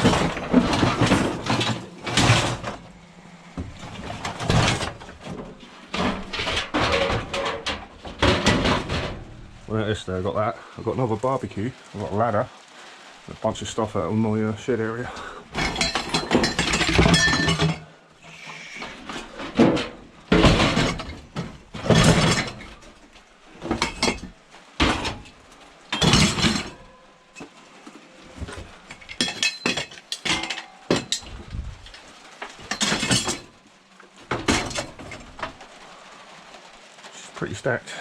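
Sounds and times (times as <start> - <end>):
scrap metal clanking: 0.0 - 9.7, 15.1 - 22.9, 26.0 - 33.6.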